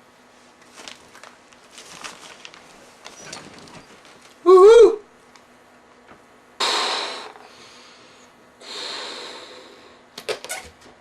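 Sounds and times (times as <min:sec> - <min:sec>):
person breathing out heavily: 0:06.6 - 0:10.0.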